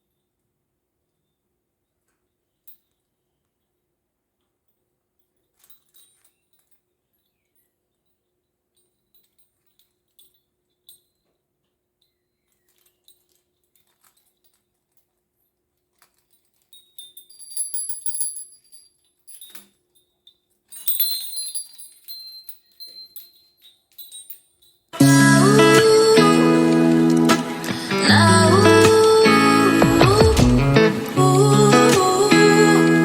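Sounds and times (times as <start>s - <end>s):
small metal chimes tinkling: 5.4s - 26.2s.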